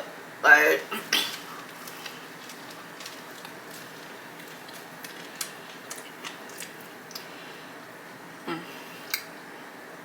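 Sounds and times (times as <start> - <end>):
chewing sandwich mouth clicks: 1.3 - 7.3.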